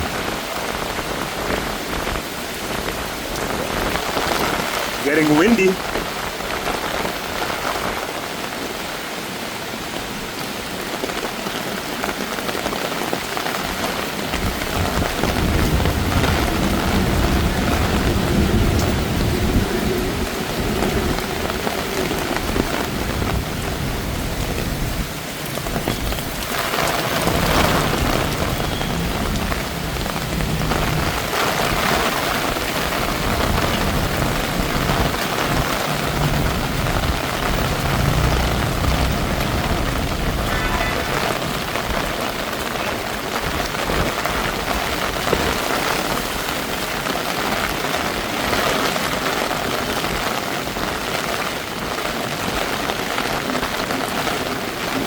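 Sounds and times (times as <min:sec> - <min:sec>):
heavy rain pouring: 0:00.0 - 0:55.0
low rumble: 0:33.2 - 0:42.4.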